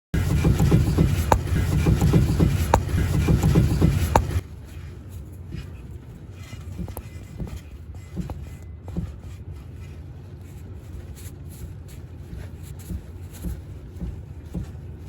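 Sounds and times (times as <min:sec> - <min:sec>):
suspension clunking: 0:00.2 - 0:04.4.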